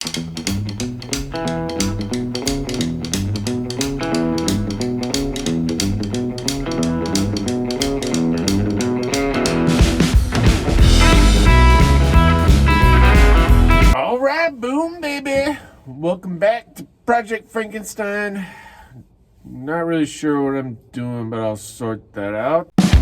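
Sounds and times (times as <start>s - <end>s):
rock music with guitar and drums: 0.0s - 14.0s.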